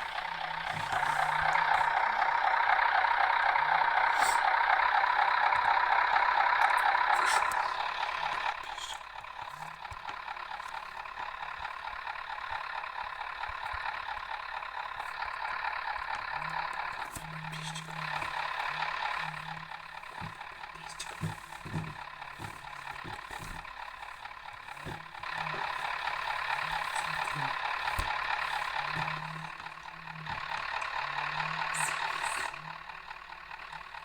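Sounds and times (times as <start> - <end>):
bus engine hum: 0.0 - 34.0.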